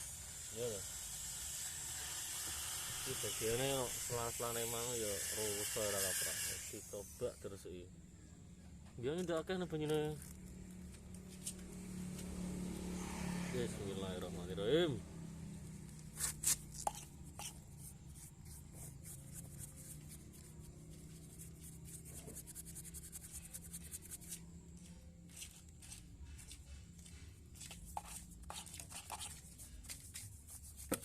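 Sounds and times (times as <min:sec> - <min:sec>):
scratchy rubbing and scrubbing: 0:15.9 - 0:31.0.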